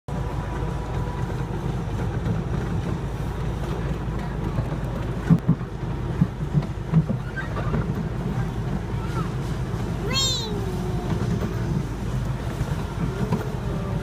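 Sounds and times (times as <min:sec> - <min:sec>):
park train rumbling on track: 0:00.1 - 0:14.0.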